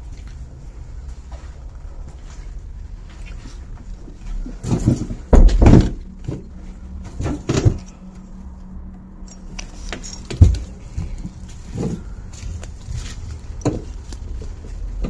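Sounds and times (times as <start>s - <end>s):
dull thumps and knocks: 4.6s - 7.9s.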